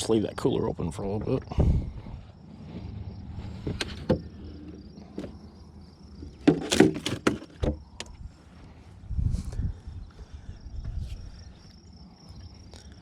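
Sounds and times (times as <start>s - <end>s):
insects chirring: 0.0s - 13.0s
sharp knocks and clatters: 3.6s - 4.3s, 6.2s - 8.1s.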